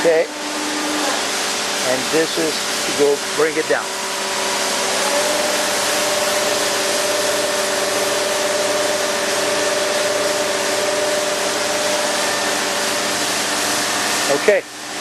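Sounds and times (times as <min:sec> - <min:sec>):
surface grinder humming: 0:00.0 - 0:15.0.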